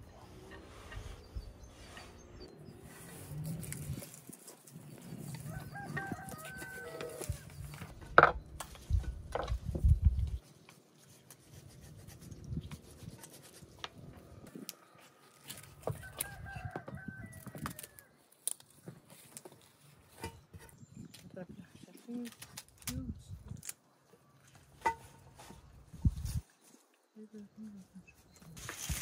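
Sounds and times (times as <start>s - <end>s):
rooster crowing: 5.4s - 7.4s, 15.9s - 18.1s.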